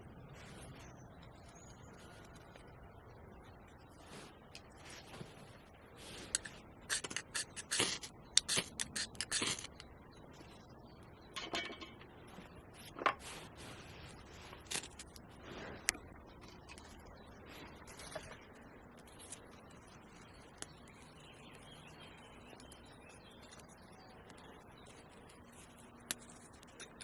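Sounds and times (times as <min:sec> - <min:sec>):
scraping and clicking by hand: 0:06.2 - 0:09.9.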